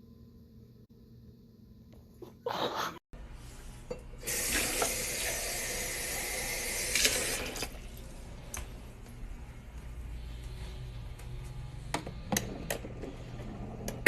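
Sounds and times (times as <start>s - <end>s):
water running from a tap: 4.2s - 7.8s.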